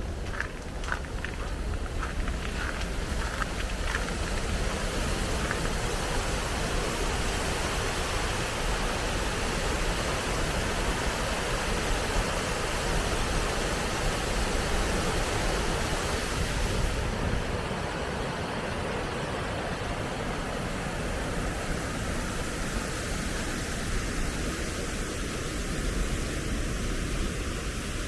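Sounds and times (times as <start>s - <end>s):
water pouring over a dam: 0.1s - 17.0s.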